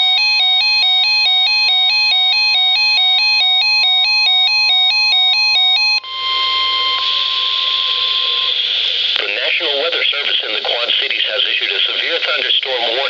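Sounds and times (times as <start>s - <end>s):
electronic two-note alarm: 0.0s - 8.9s
steady alert tone: 6.0s - 8.9s
radio hiss: 7.1s - 13.0s.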